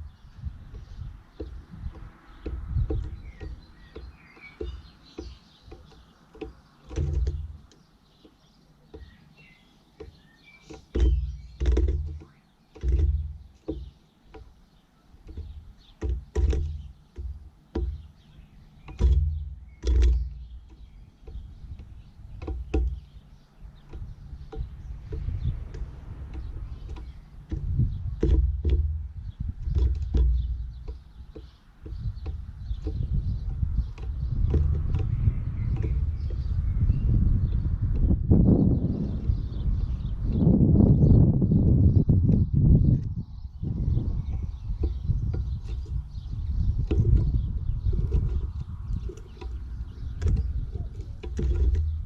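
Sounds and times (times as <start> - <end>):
dull thumps: 0.0 - 52.0.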